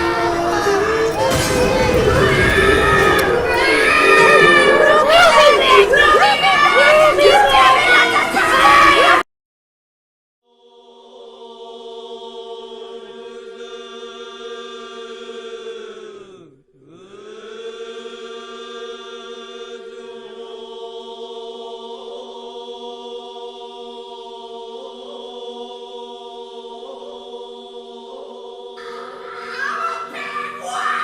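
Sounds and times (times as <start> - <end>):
wavering higher tones: 0.0 - 7.0
bright singing voices: 0.0 - 9.2, 10.6 - 31.0
low droning chant: 0.0 - 9.2, 10.6 - 31.0.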